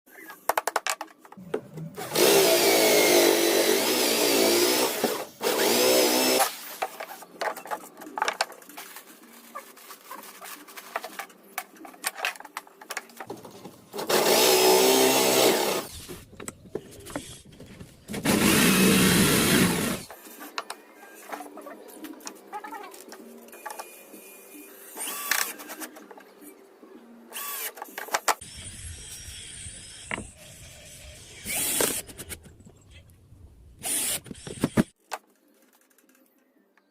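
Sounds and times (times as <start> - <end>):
electric power tool motor: 18.2 - 20.1.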